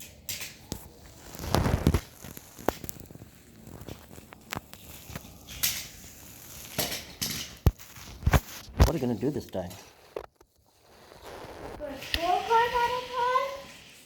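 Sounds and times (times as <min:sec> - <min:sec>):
toy cars clicking and clattering: 0:00.0 - 0:00.8, 0:04.0 - 0:07.7
toy cars rolling on plastic track: 0:03.8 - 0:07.7, 0:11.8 - 0:14.0.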